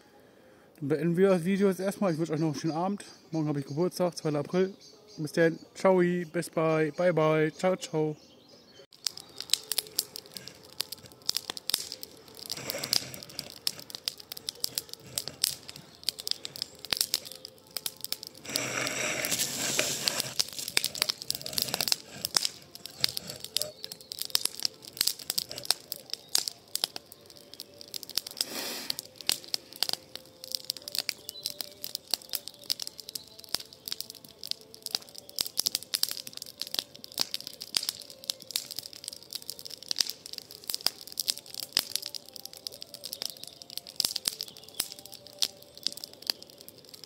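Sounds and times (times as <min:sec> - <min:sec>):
campfire crackling and popping: 0:08.8 - 0:47.0
fire rushing hiss: 0:09.0 - 0:42.1.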